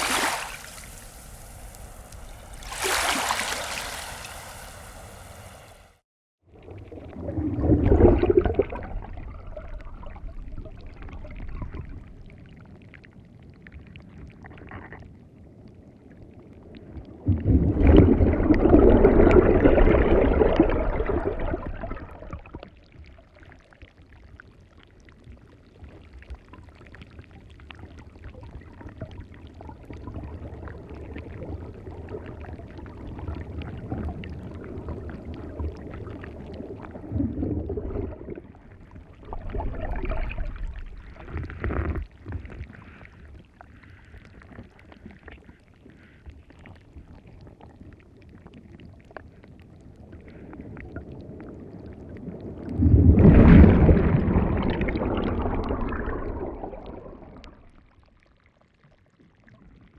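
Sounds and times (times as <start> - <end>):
ocean waves washing onto beach: 0.0 - 6.0.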